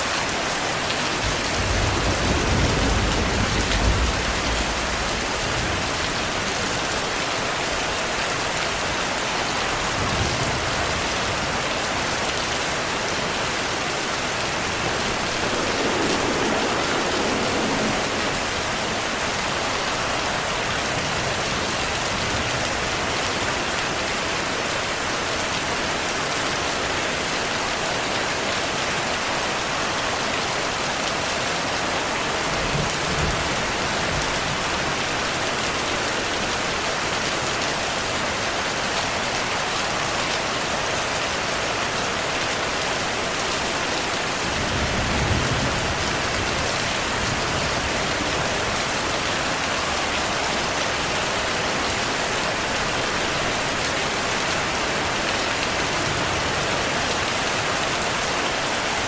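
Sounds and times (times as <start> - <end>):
heavy rain falling: 0.0 - 59.0
distant thunder rumbling: 1.2 - 6.5, 14.3 - 21.5.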